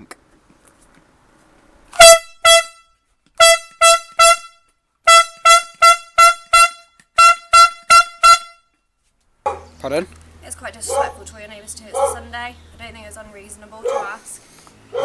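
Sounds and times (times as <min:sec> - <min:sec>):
air horn blasts: 0:02.0 - 0:08.8.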